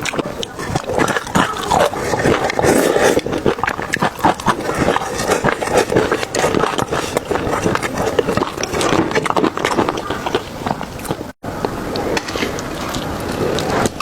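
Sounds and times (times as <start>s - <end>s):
person chewing wet smacks: 0.0s - 11.4s.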